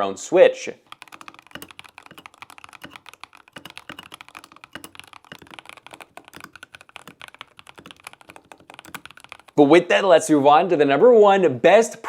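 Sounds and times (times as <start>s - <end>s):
typing on mechanical keyboard: 0.8s - 9.7s.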